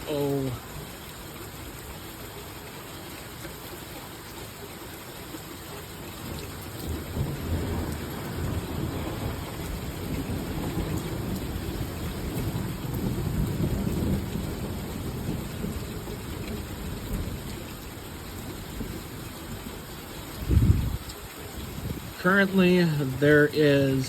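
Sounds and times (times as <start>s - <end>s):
heavy rain: 0.0s - 24.0s
thunder rumbling: 6.8s - 19.7s, 20.3s - 24.0s.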